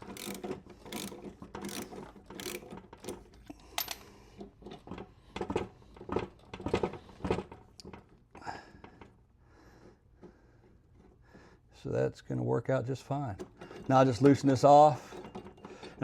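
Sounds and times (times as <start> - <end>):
ratchet wrench clicking: 0.0 - 2.7
metal clinking: 3.7 - 4.1.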